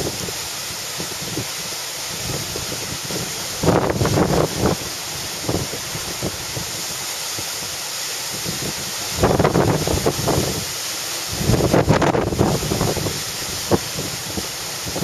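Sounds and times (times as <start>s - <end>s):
wind buffeting microphone: 0.0s - 7.7s, 8.3s - 10.7s, 11.3s - 15.0s
hurricane wind: 0.0s - 15.0s
storm surf rushing: 0.0s - 15.0s.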